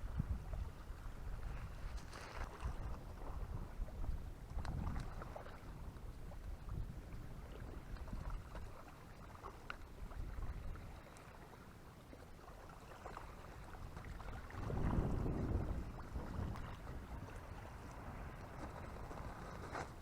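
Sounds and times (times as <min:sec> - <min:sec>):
wind buffeting microphone: 0:00.0 - 0:08.8, 0:13.4 - 0:20.0.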